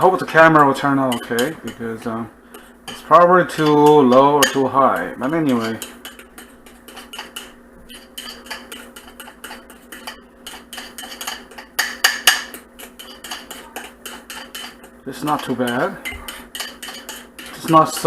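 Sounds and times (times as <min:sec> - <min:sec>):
metal utensils clinking on bowl: 0:00.3 - 0:02.1, 0:02.9 - 0:18.0.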